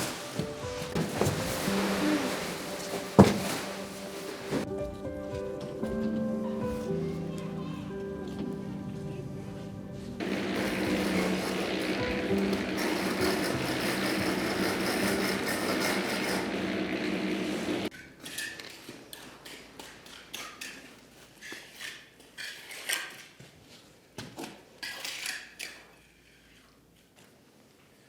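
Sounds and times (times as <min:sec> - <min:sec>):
hand tools knocking and scraping: 0:00.0 - 0:04.7, 0:10.2 - 0:23.3
background music: 0:00.0 - 0:17.9.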